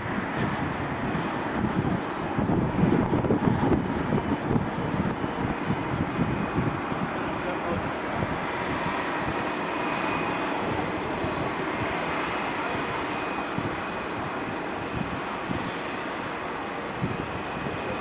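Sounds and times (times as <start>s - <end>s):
jet engines roaring: 0.0s - 18.0s.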